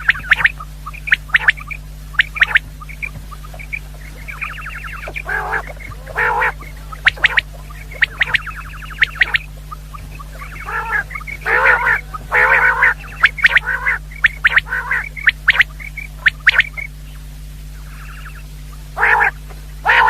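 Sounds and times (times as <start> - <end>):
low electrical hum: 0.0 - 20.0
quail calling: 0.0 - 20.0.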